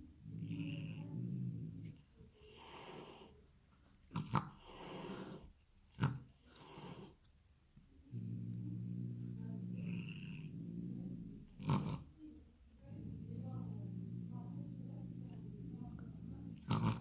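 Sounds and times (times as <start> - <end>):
cat purring: 0.0 - 3.4, 4.1 - 7.2, 8.0 - 17.0.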